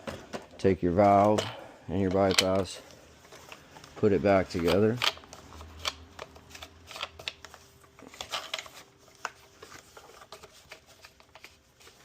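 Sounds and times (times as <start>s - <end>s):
plastic parts clicking and tapping: 0.0s - 7.5s.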